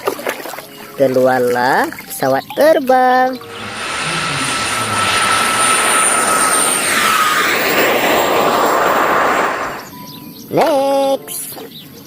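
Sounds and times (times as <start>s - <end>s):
airplane flying past: 3.2s - 10.1s.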